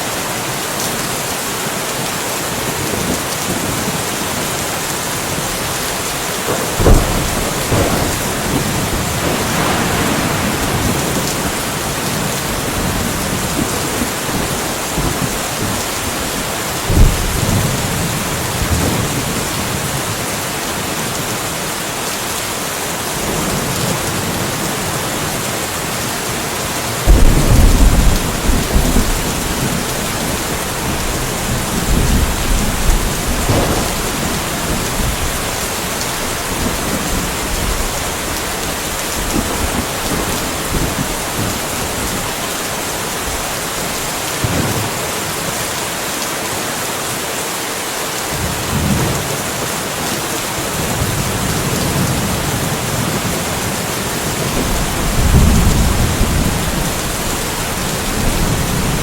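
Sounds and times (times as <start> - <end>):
steady rain falling: 0.0 - 59.0
thunder rumbling: 5.2 - 20.2, 27.0 - 44.8, 50.7 - 59.0.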